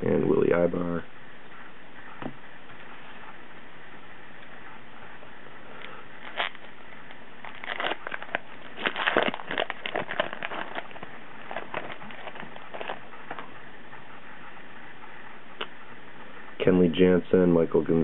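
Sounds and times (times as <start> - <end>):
plastic wrapper crinkling and tearing: 6.2 - 6.7, 7.4 - 13.4.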